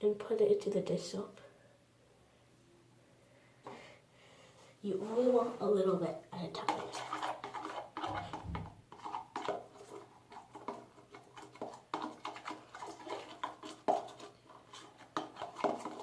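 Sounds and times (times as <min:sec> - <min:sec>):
utensil scraping a container: 0:06.4 - 0:16.0.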